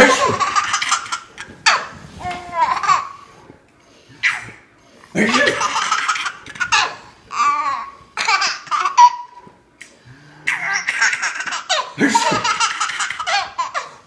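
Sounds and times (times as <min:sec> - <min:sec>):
baby laughing: 0:00.0 - 0:03.2, 0:05.2 - 0:09.4, 0:10.5 - 0:14.0.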